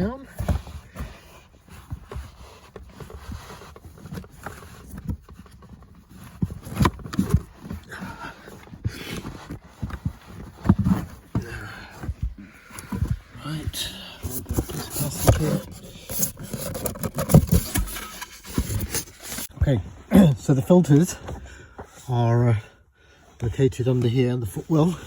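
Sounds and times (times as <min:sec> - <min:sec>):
carpet rustling: 0:00.0 - 0:22.4.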